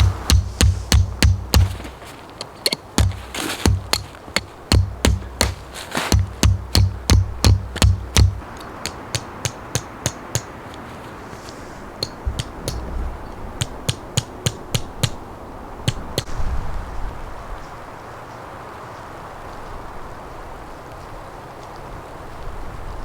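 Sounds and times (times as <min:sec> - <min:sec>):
percussive clicks: 0:00.0 - 0:13.0, 0:13.6 - 0:15.2
low thumps: 0:00.0 - 0:15.1.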